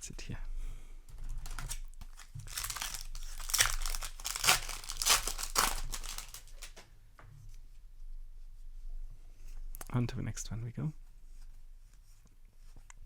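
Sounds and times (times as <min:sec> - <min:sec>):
foil wrapper crinkling: 0:01.1 - 0:06.8.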